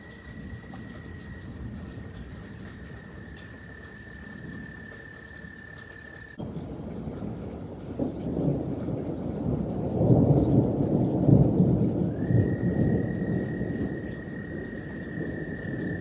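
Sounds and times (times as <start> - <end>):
steady rain: 0.0 - 16.0
rolling thunder: 6.4 - 16.0.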